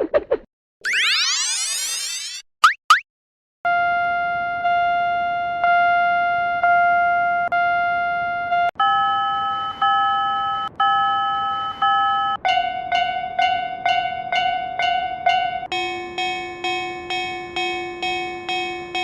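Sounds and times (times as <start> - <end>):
level-crossing warning tone dinging: 8.8 - 19.0.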